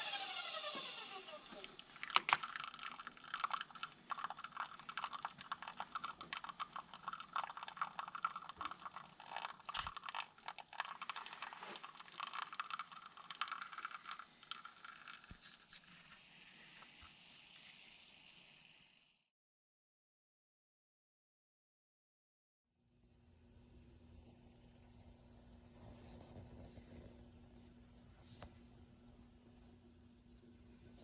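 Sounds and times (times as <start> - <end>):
faint steady motor hum: 0.0 - 9.9
grinder crunching coffee beans: 0.0 - 15.9.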